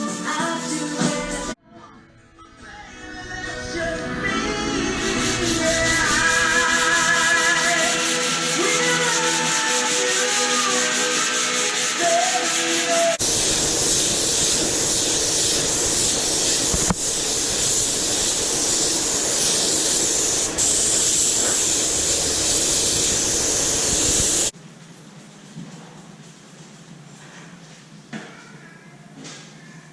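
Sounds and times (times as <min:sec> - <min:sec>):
background music: 0:00.0 - 0:13.2.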